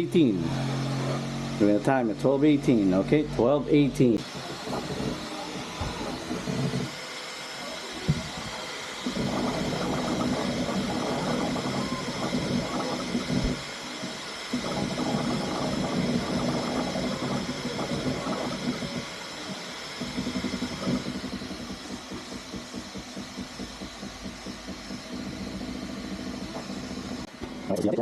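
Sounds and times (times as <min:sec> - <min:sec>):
stepper motors whining: 0:00.0 - 0:28.0
fluttering hum: 0:08.3 - 0:28.0.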